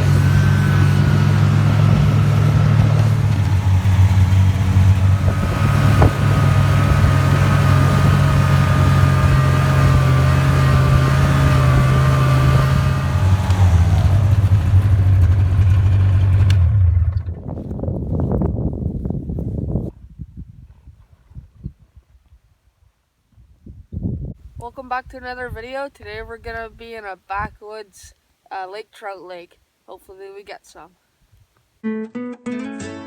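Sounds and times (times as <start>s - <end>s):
vehicle engine running: 0.0s - 18.6s.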